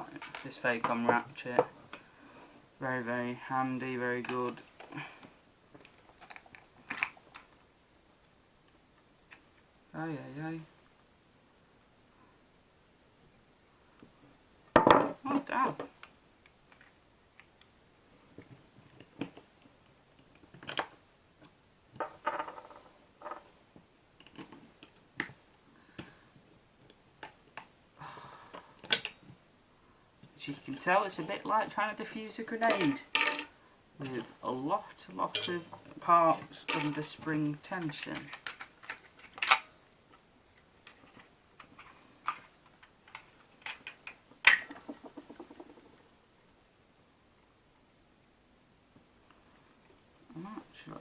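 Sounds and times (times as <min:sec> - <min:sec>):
rattle of ticks: 0:43.1 - 0:46.0.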